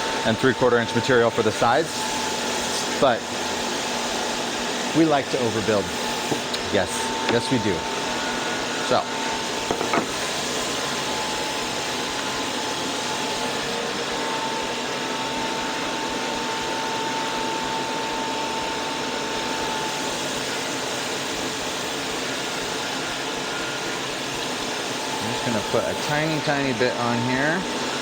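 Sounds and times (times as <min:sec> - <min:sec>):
electric sander whirring: 0:01.6 - 0:19.6.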